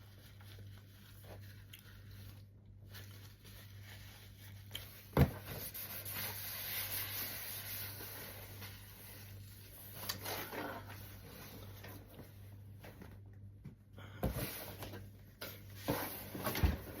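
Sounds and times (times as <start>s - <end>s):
low hum and hiss: 0.0s - 17.0s.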